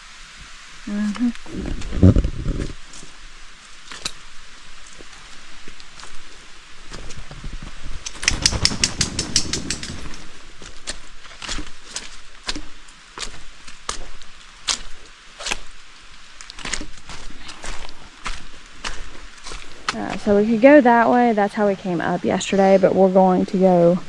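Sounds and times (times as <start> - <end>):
footsteps crunching on trail: 1.2 - 8.2, 8.8 - 21.2
clicking and rustling: 8.0 - 10.3.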